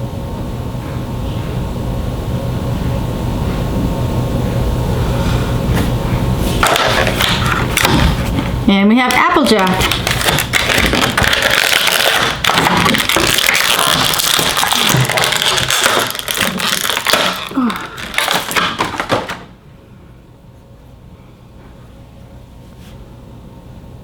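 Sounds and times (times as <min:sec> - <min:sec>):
plastic packaging crinkling: 0:06.6 - 0:19.5.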